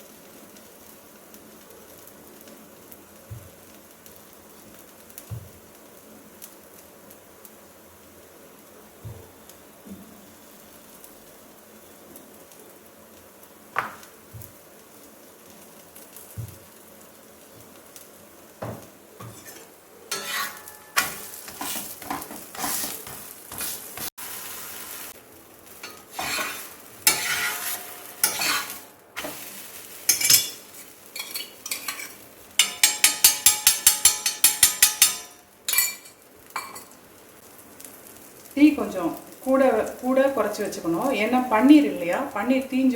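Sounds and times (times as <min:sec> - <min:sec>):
spatula tapping: 0:18.6 - 0:24.1, 0:31.2 - 0:36.8
spatula scraping a griddle: 0:19.2 - 0:25.1, 0:25.7 - 0:36.0.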